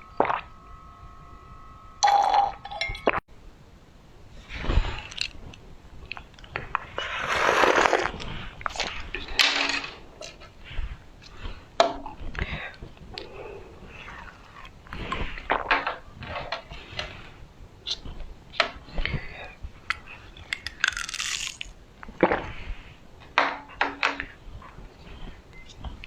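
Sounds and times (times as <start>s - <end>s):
eating crunches: 4.9s - 10.5s, 19.8s - 22.6s
sipping: 6.1s - 10.6s, 11.2s - 16.9s
short hiss: 7.0s - 9.0s.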